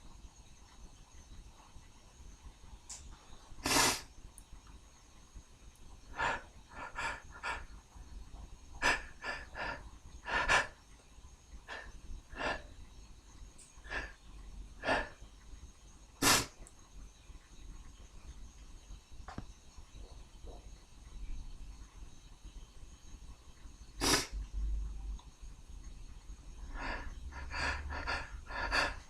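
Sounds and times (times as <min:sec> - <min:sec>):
soft bursts of breath: 0:06.1 - 0:07.8, 0:08.8 - 0:10.9, 0:11.6 - 0:12.9, 0:13.8 - 0:14.2, 0:14.8 - 0:15.2, 0:24.0 - 0:24.3, 0:26.6 - 0:29.0.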